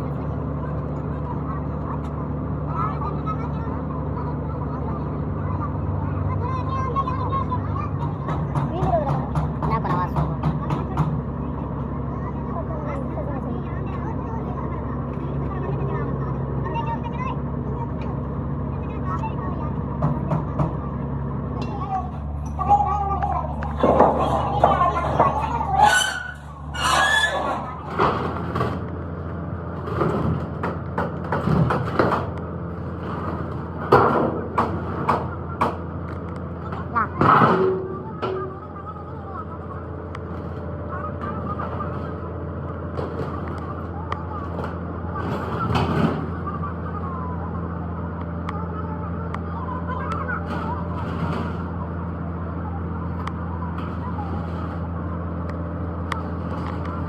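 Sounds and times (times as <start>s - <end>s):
low mechanical hum: 0.0s - 57.0s
metal clanks and knocks: 21.6s - 38.8s, 40.2s - 46.7s.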